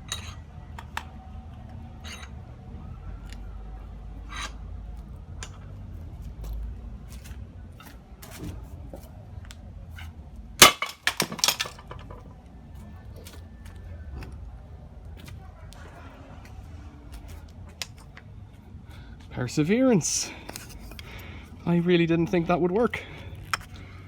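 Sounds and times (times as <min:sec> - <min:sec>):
sledgehammer striking metal lock: 0:10.6 - 0:12.2.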